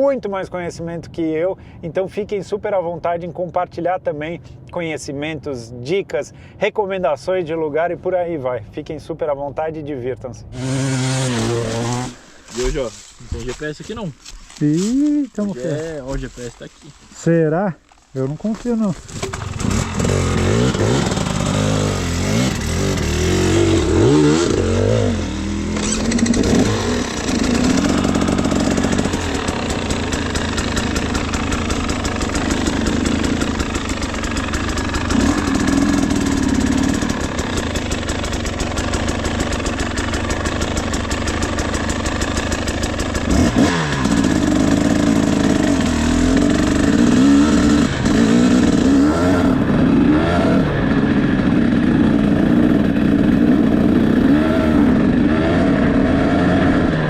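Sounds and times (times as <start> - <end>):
dirt bike engine revving: 10.5 - 13.0, 19.0 - 57.0.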